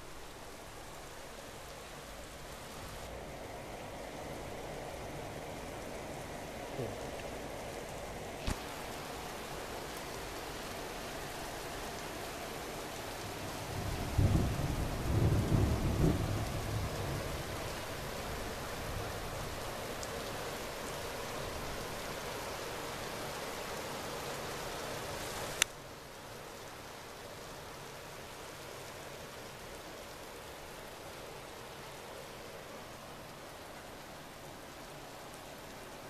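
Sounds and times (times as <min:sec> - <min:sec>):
steady rain: 0:00.0 - 0:36.0
thunder rumbling: 0:13.8 - 0:17.4.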